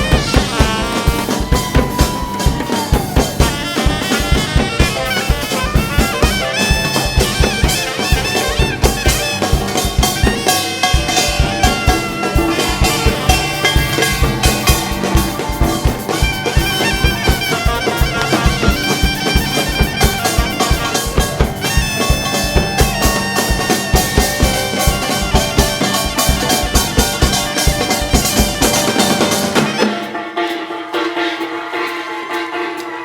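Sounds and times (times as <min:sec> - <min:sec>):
steady drum beat: 0:00.0 - 0:33.0
wind instrument melody: 0:00.0 - 0:33.0.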